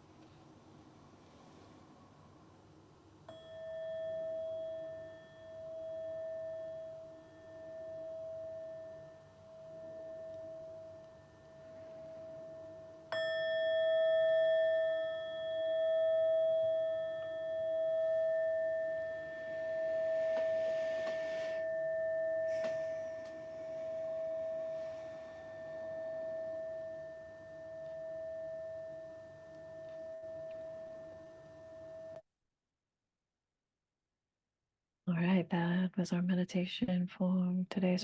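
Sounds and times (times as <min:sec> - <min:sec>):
singing bowl ringing: 0:03.3 - 0:32.2.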